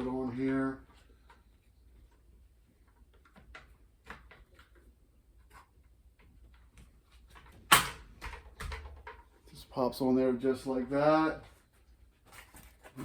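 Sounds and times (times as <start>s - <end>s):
loud plastic snap: 7.7s - 8.8s.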